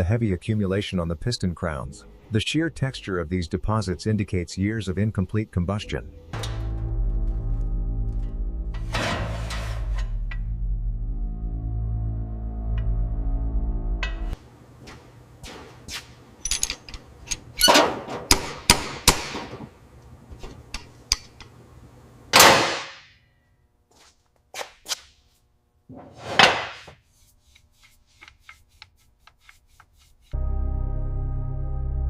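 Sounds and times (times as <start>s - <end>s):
noisy scrapes: 8.8s - 10.2s.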